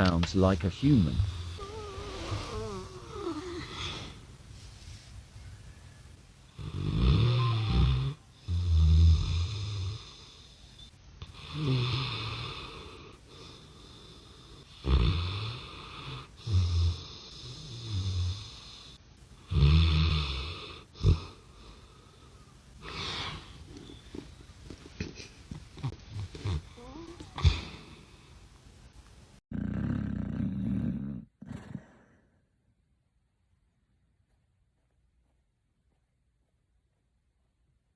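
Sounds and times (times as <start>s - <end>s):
dog snoring: 0.9s - 4.2s, 6.5s - 22.2s, 29.5s - 32.2s.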